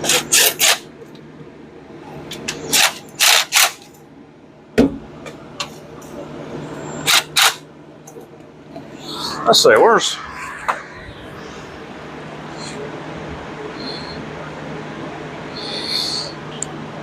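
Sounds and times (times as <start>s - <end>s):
steady low hum: 3.8s - 17.0s.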